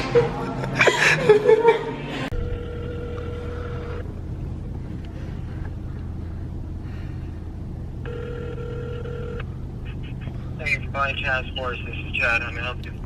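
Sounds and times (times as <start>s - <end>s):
low car cabin hum: 0.1s - 13.0s
telephone ringback tone: 2.3s - 4.0s, 8.0s - 9.4s.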